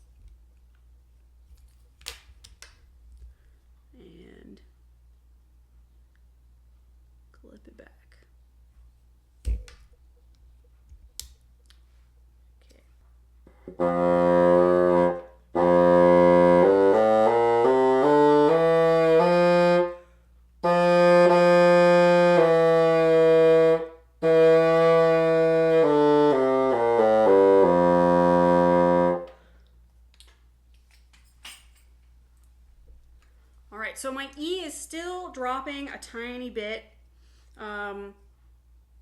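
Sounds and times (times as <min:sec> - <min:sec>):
bassoon playing: 0:13.5 - 0:29.5.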